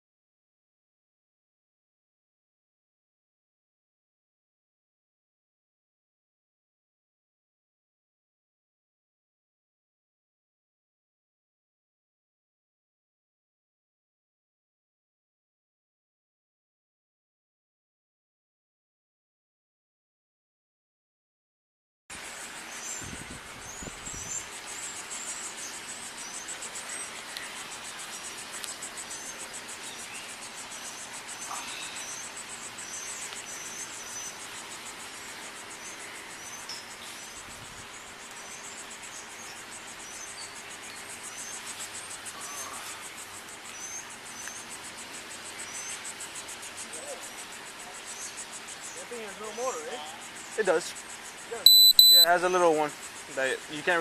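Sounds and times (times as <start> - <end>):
faint steady hum: 22.1 - 54.0
insects trilling: 22.1 - 54.0
short high chirps: 51.7 - 52.3.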